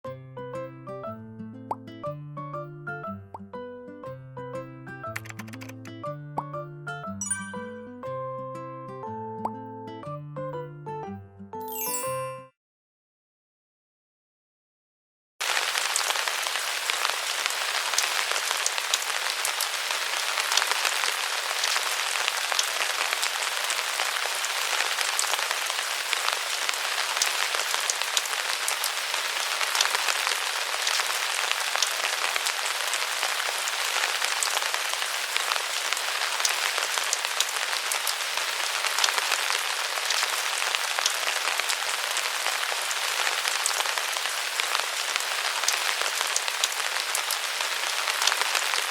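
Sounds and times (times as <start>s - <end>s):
rain drops pattering: 15.4s - 48.9s.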